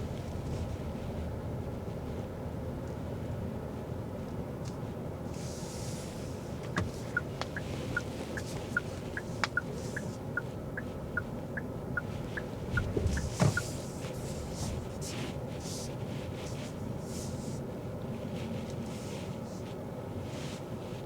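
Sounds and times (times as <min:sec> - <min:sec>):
cabin road noise: 0:00.0 - 0:21.0
turn signal ticking: 0:06.6 - 0:13.8.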